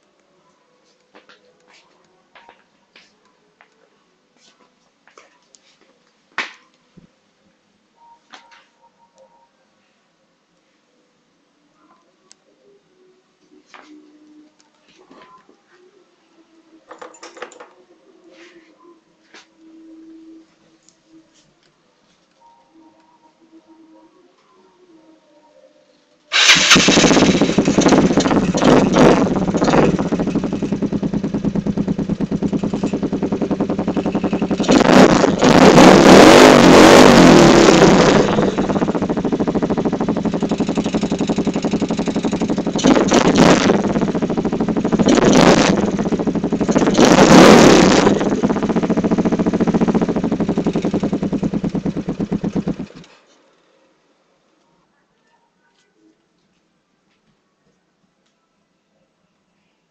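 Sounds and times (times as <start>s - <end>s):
scooter engine revving: 26.4s - 53.1s.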